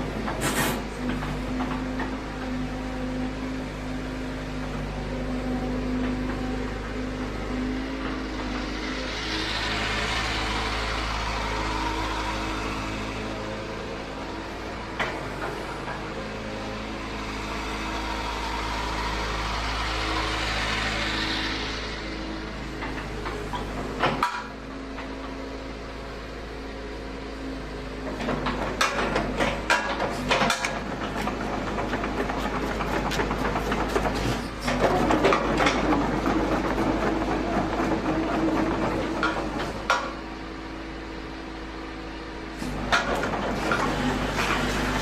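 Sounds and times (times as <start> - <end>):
diesel engine running: 0.0 - 45.0
hydraulic hiss: 0.4 - 0.9.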